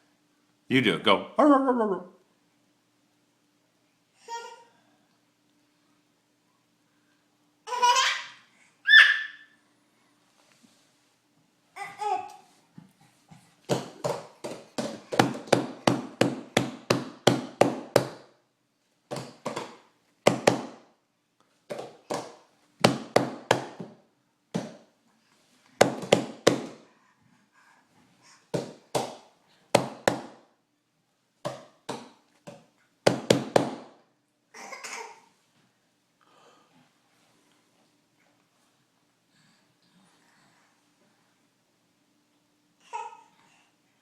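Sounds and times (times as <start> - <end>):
rapid sharp knocks: 13.7 - 18.2.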